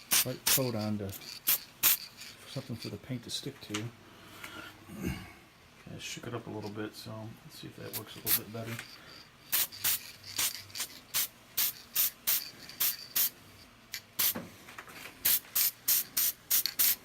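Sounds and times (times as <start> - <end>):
spray paint can hissing: 0.0 - 2.3, 9.5 - 13.3, 14.2 - 14.4, 15.2 - 17.0.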